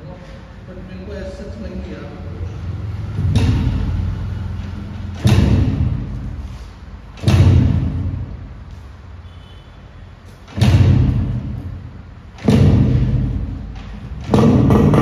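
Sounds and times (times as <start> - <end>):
deep booming drum hits: 5.1 - 6.4, 7.2 - 8.4.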